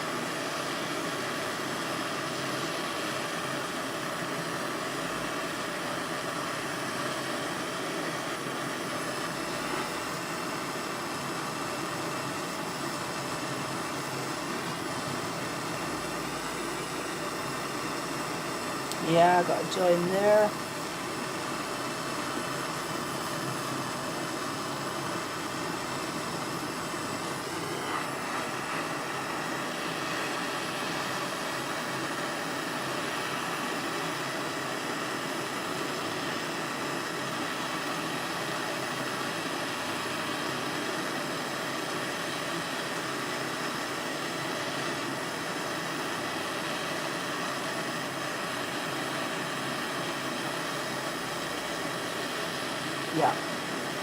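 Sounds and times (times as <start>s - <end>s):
gas torch flame rushing: 0.0s - 54.0s.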